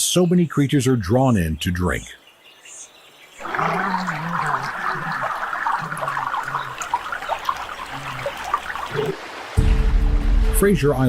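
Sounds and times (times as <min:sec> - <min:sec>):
rushing gurgling water: 0:03.2 - 0:10.5.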